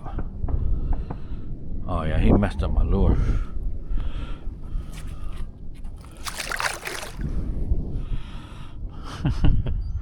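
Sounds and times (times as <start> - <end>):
water sloshing against kayak: 4.7 - 7.6
loud water splash: 6.0 - 7.4.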